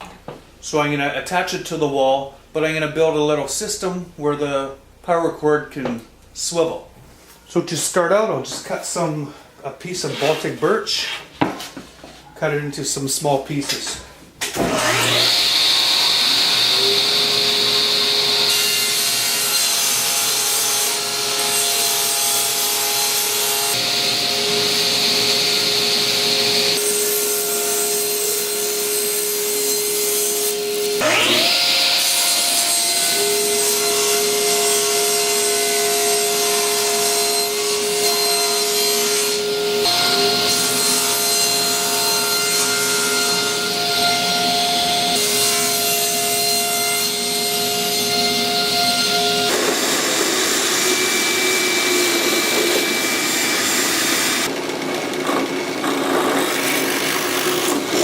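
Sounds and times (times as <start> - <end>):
electric power saw running: 14.6 - 19.3, 31.0 - 32.1, 47.6 - 58.0
saw cutting plywood: 14.6 - 58.0.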